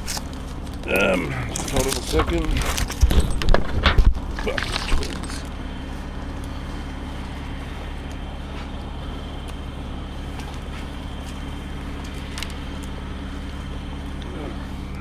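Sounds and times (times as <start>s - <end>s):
diesel crane engine running: 0.0s - 15.0s.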